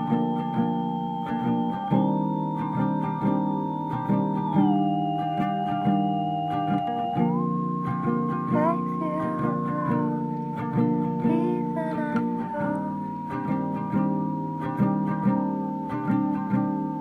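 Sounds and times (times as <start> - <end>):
plucked guitar music: 0.0 - 17.0.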